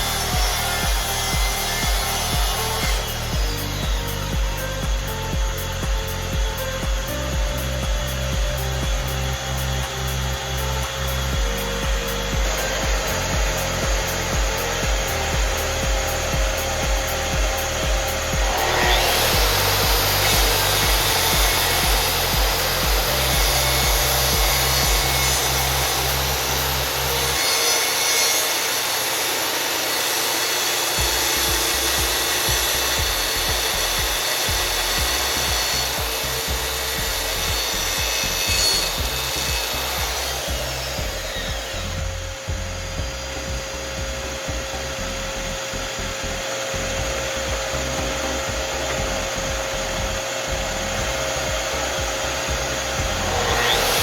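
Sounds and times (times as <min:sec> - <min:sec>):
background music with bass: 0:00.0 - 0:27.6, 0:31.0 - 0:54.0
power tool rasping wood: 0:00.0 - 0:54.0.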